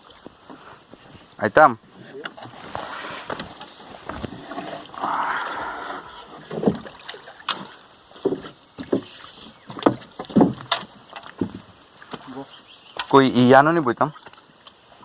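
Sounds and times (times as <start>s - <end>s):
water rushing and splashing: 0.0s - 15.0s
knocks and thuds against boat: 6.4s - 6.9s, 7.6s - 9.1s, 9.7s - 12.2s.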